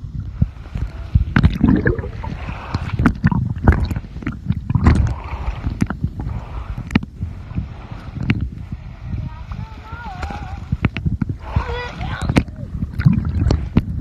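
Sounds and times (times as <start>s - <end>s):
sea water sloshing and splashing: 0.0s - 14.0s
low rumble: 1.1s - 11.6s.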